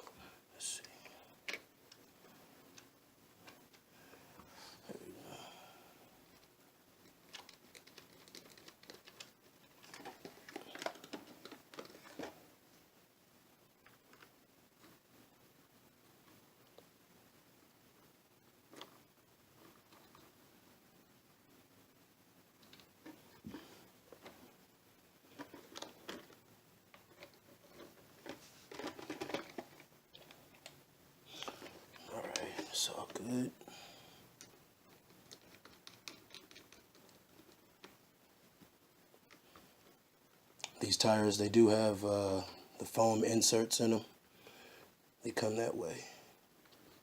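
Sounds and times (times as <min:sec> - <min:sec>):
small clicks and scrapes: 0:00.8 - 0:04.5, 0:06.3 - 0:12.4, 0:18.7 - 0:20.4, 0:22.6 - 0:24.6, 0:25.2 - 0:33.2, 0:34.4 - 0:38.0.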